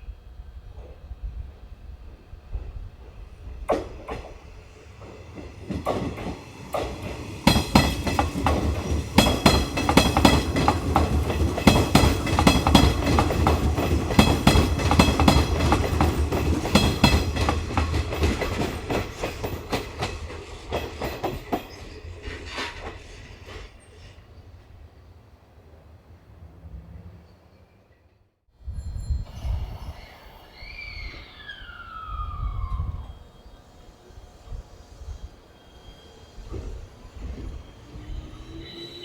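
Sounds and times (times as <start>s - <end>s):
train low rumble: 0.0s - 27.5s, 28.6s - 39.0s
train wheels clattering: 2.5s - 24.2s.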